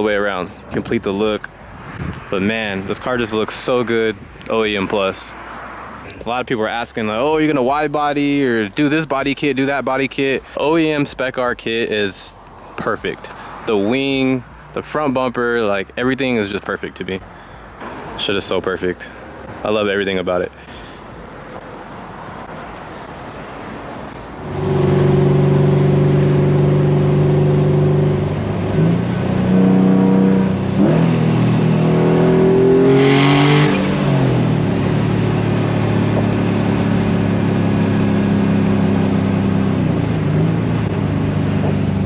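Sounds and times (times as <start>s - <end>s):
car engine accelerating hard: 21.0s - 42.0s.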